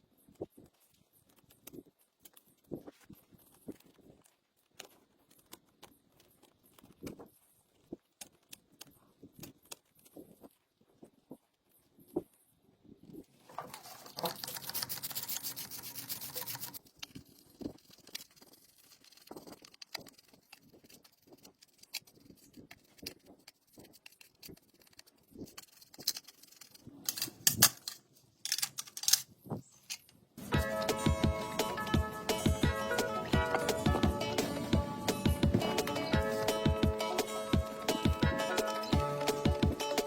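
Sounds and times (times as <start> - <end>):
harsh steady noise: 30.4 - 39.8.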